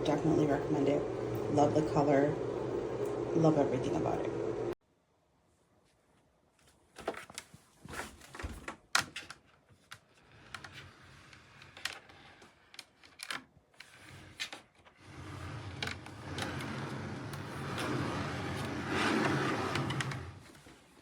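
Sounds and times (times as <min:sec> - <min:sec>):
low steady hum: 0:00.0 - 0:04.8.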